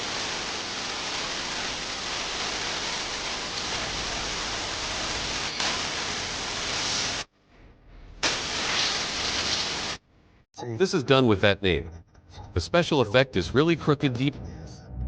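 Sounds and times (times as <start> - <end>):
dry ice blaster hissing: 0.0 - 7.3, 8.2 - 10.0.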